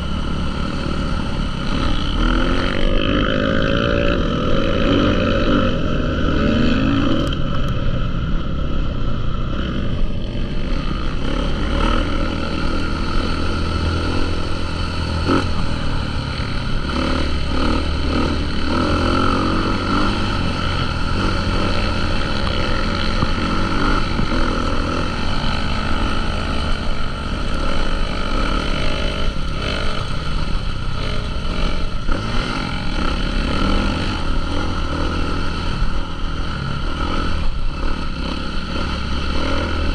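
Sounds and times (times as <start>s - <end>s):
dirt bike engines running: 0.0s - 39.9s.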